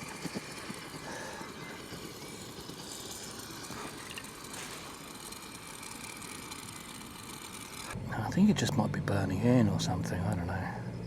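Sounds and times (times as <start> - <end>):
camping stove flame hissing: 0.0 - 8.0.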